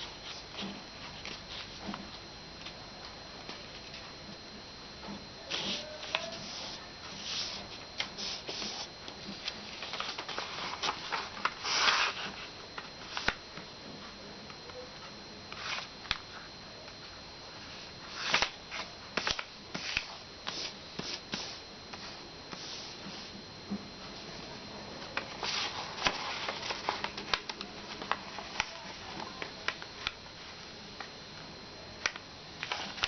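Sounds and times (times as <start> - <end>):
thin high whine: 0.0 - 33.0
paper rustling and crinkling: 5.5 - 13.4, 18.0 - 23.3, 25.1 - 30.2, 32.6 - 33.0.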